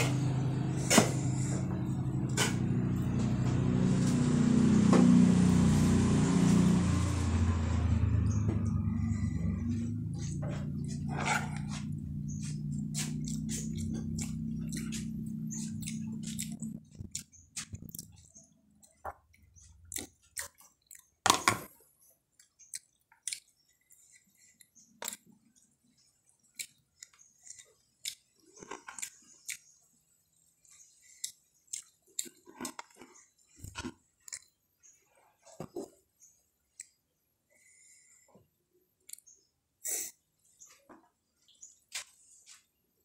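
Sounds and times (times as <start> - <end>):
steady low hum: 0.0 - 18.7
chewing and crunching food: 8.3 - 38.2, 38.8 - 43.0.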